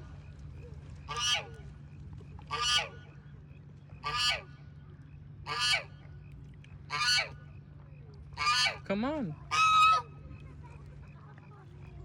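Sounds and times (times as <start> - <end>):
goose honking: 9.5 - 10.0.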